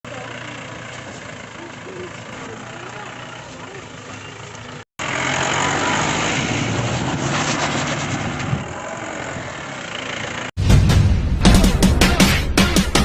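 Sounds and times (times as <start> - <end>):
jeep engine running: 0.0 - 10.6
rushing noise: 5.2 - 9.5.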